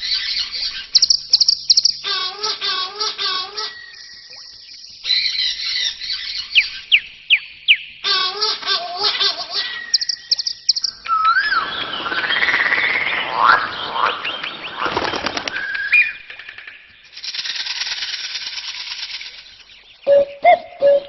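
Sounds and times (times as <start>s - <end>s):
bird calls: 0.0s - 21.0s
high rushing sound: 11.3s - 14.8s.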